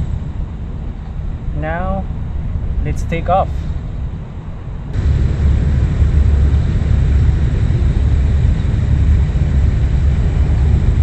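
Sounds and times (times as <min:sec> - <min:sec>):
drone propellers rushing: 0:04.8 - 0:11.0.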